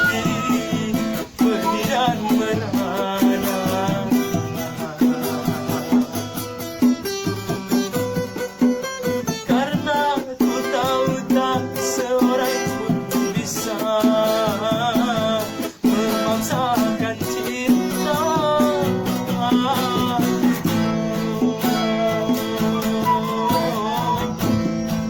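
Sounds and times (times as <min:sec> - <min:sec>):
wavering melody line: 0:00.0 - 0:00.7
plucked acoustic guitar: 0:00.0 - 0:25.0.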